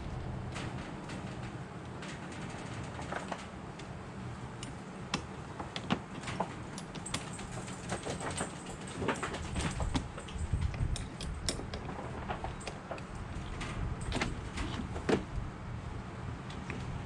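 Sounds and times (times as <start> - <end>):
low rumbling handling noise: 0.0 - 17.0
metallic clicks of hand tools: 10.4 - 11.9.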